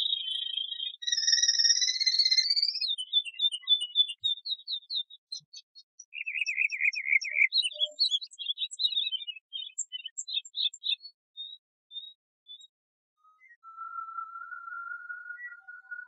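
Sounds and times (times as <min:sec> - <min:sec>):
low rapid bird trill: 0:00.0 - 0:12.6
canary chirping: 0:00.0 - 0:12.7.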